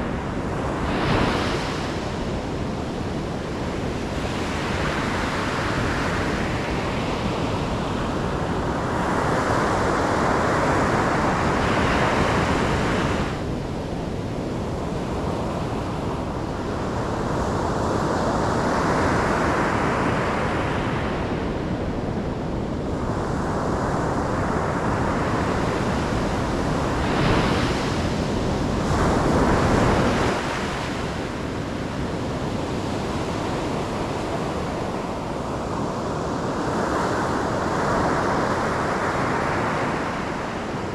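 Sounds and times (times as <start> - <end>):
ocean waves breaking: 24.3 - 40.9.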